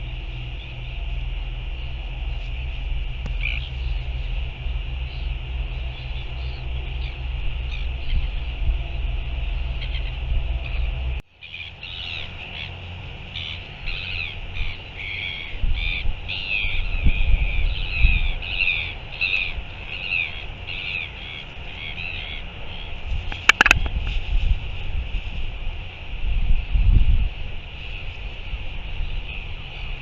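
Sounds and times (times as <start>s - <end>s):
wind rumble on microphone: 0.0s - 11.2s, 12.0s - 30.0s
sharp clicks: 23.3s - 23.9s.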